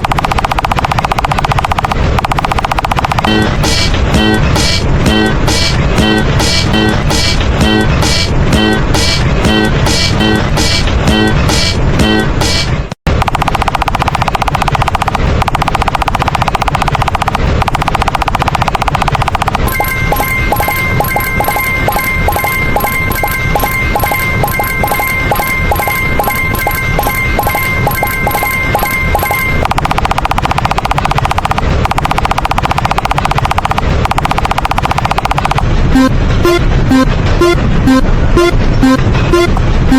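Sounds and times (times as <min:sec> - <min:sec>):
rapid rattle of sharp clicks: 0:00.0 - 0:04.9, 0:13.1 - 0:36.1
ringing tone-like pattern: 0:14.0 - 0:39.6.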